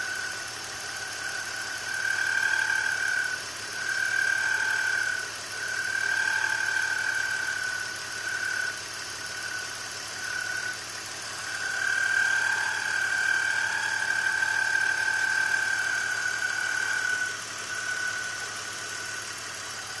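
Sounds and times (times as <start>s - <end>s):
car engine running: 0.0s - 20.0s
high whine from belt drive: 0.0s - 20.0s.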